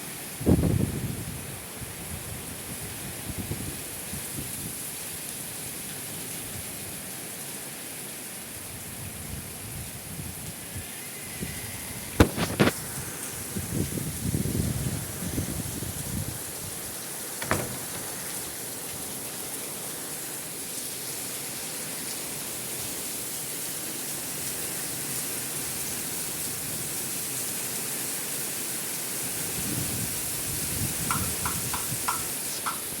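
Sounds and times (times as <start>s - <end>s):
heavy rain hissing: 0.0s - 33.0s
wind gusts on microphone: 0.4s - 4.8s, 8.7s - 18.7s, 29.3s - 33.0s.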